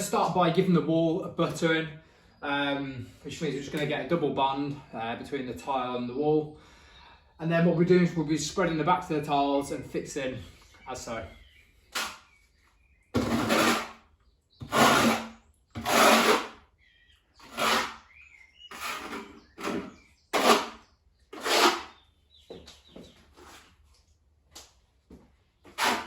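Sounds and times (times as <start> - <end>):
trowel scraping tile adhesive: 11.9 - 12.3, 13.2 - 14.0, 14.6 - 16.6, 17.4 - 18.1, 18.7 - 22.0, 25.7 - 26.0.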